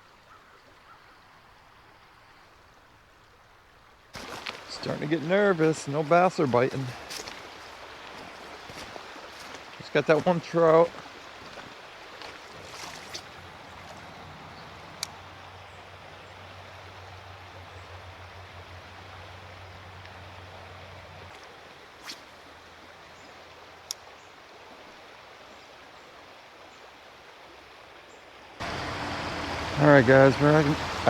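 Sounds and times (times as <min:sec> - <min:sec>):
creek water running: 0:00.0 - 0:31.0.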